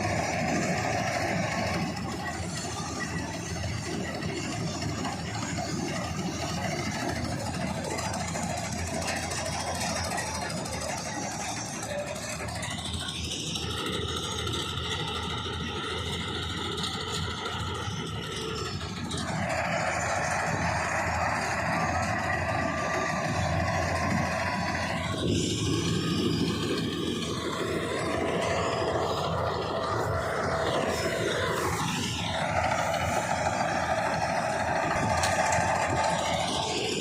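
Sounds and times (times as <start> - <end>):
steady high tone: 0.0 - 37.0
tractor diesel engine running: 0.0 - 37.0.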